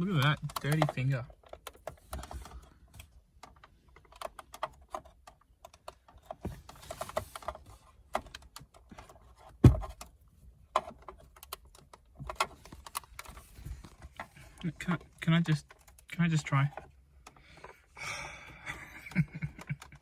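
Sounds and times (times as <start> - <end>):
clicks of plastic buttons: 0.1 - 2.3.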